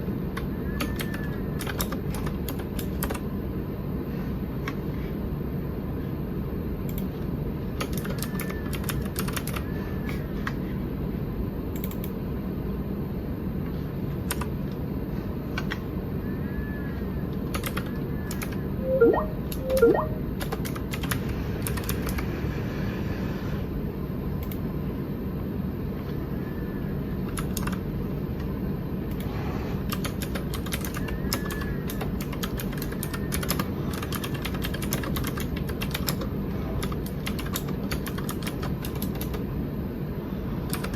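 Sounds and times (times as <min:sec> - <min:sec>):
short rising chirps: 0:18.8 - 0:20.2.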